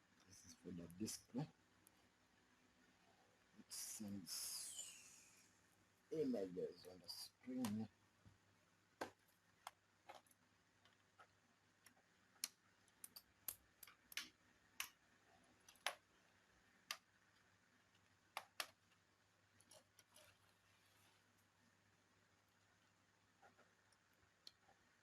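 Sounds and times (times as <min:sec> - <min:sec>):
laptop parts clicking and tapping: 0:09.0 - 0:15.0, 0:15.6 - 0:16.1, 0:16.8 - 0:19.0.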